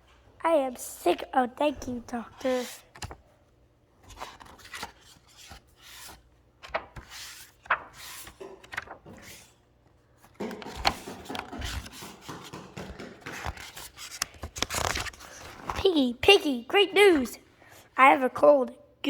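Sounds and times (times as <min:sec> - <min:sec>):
book pages turning and rustling: 0:01.7 - 0:16.2.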